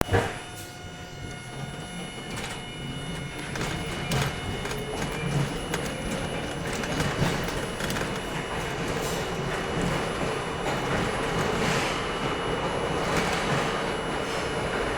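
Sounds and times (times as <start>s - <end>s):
subway train rumbling: 0.0s - 14.9s
scattered clicks: 2.2s - 11.8s.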